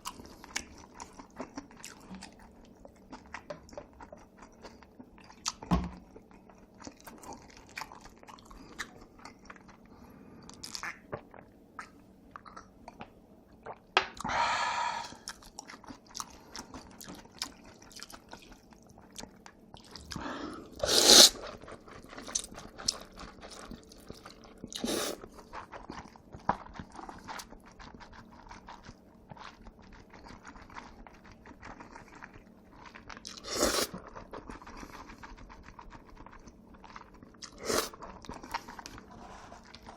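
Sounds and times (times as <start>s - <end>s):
chewing and wet mouth sounds: 0.0s - 39.9s.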